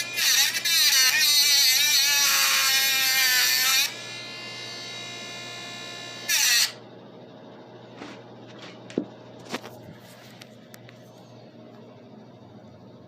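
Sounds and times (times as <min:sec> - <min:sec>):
cordless saw cutting metal: 0:00.0 - 0:06.8.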